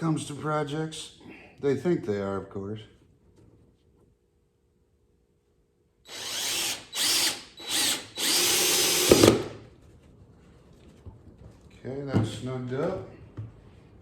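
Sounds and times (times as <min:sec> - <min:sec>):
drill driving a screw into wood: 0:06.1 - 0:09.6.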